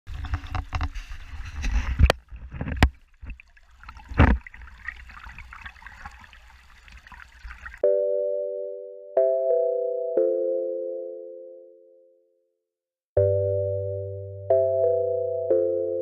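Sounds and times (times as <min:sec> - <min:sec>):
sustained music chord: 0:13.2 - 0:16.0.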